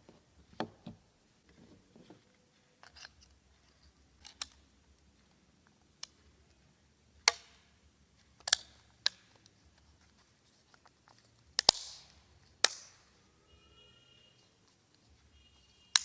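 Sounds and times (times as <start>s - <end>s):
sharp clicks and snaps: 11.1s - 13.0s.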